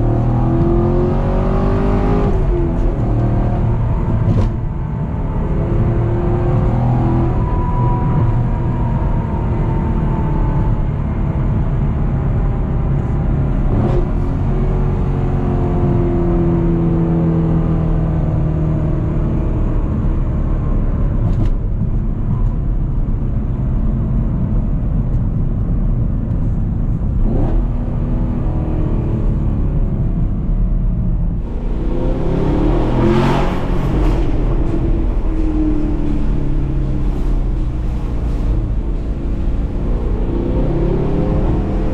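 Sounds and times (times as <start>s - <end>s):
road and drivetrain noise: 0.0s - 41.9s
car engine running: 30.2s - 41.9s.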